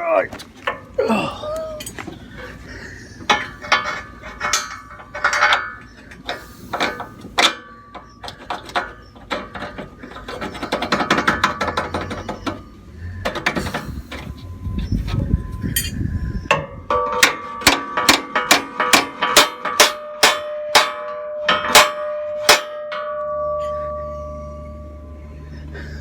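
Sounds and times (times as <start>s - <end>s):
hammer striking metal: 15.8s - 25.4s.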